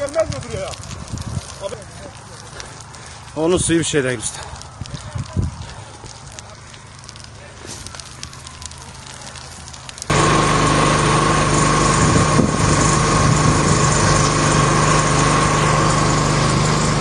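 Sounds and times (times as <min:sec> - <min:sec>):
faint crackling: 0:00.0 - 0:10.2
small engine running steadily: 0:10.0 - 0:17.0.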